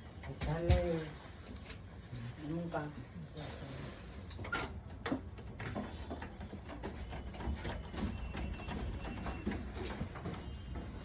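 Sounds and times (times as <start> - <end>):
computer parts clicking: 5.2 - 9.6.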